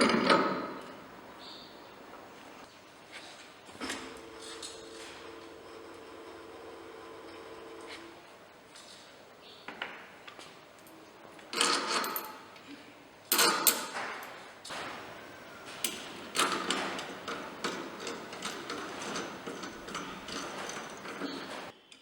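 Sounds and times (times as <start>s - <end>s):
metal clanking and scraping: 15.7s - 21.8s.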